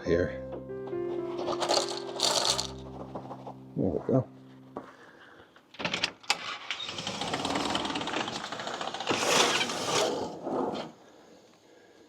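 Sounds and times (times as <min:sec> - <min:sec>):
small clips rattling in container: 0:01.4 - 0:02.8.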